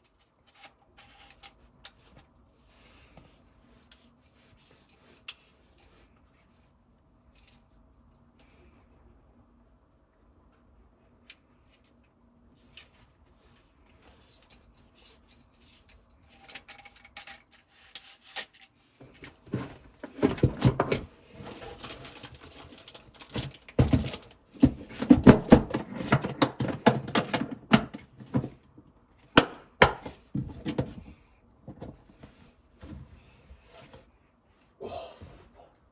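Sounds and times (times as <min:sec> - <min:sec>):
objects and packaging handled: 0:11.3 - 0:28.8.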